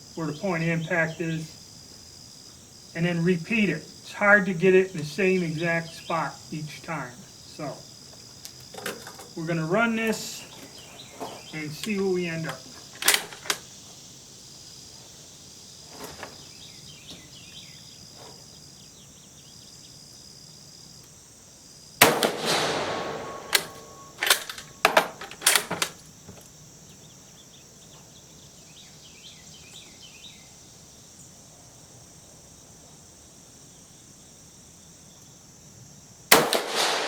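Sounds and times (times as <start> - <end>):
rifle bolt metallic clicks: 13.0 - 13.6, 22.0 - 26.0
rifle shot: 22.0 - 24.6, 36.3 - 37.0.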